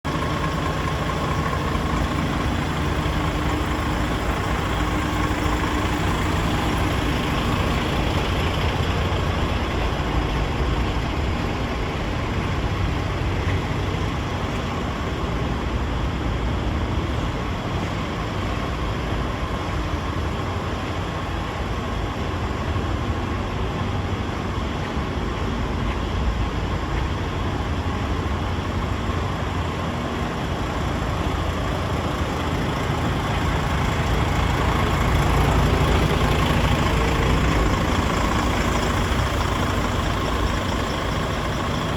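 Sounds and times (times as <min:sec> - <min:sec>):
truck diesel engine idling: 0:00.0 - 0:41.9.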